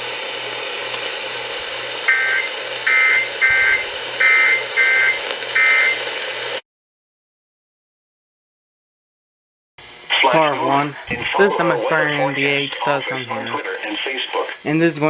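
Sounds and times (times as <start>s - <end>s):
radio receiver hiss: 0.0s - 6.6s, 9.8s - 14.9s
warbling two-pitch data tones: 2.1s - 6.0s.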